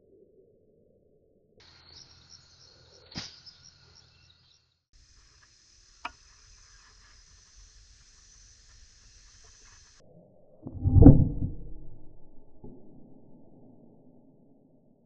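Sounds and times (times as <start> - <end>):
insects trilling: 5.0 - 10.0.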